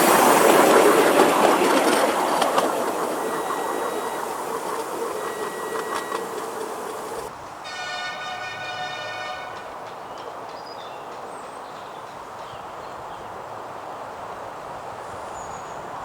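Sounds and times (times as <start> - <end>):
miniature train wheels rumbling: 0.0 - 7.3.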